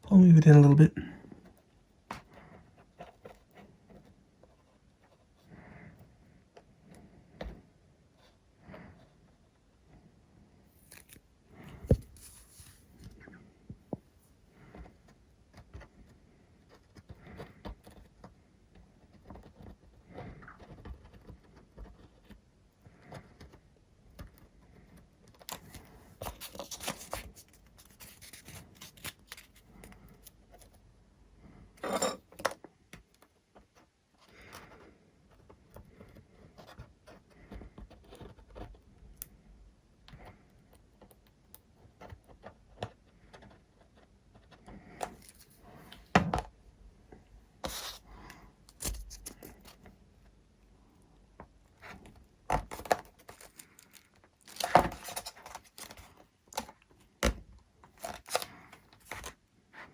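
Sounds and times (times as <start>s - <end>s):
foam parts clicking and rustling: 51.4s - 59.4s.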